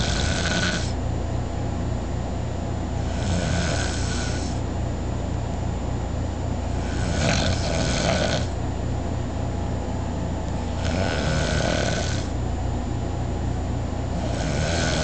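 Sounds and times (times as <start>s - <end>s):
person snoring: 0.0s - 1.0s, 3.0s - 4.6s, 6.7s - 8.6s, 10.7s - 12.4s, 14.1s - 15.0s
steady low rumble: 0.0s - 14.7s.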